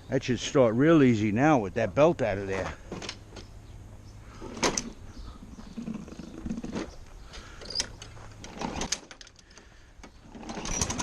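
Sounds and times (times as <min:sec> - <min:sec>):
mower engine turning over: 0:04.4 - 0:05.0, 0:05.8 - 0:09.4, 0:10.0 - 0:11.0
recoil starter clattering: 0:10.0 - 0:11.0.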